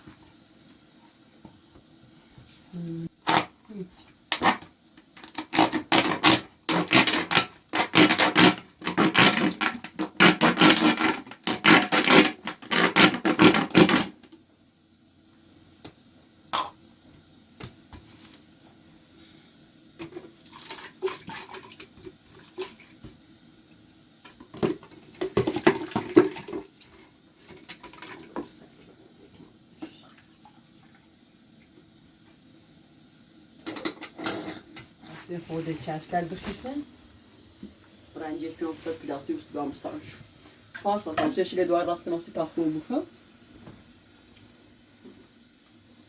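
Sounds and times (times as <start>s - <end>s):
water splashing in a container: 20.4s - 22.8s.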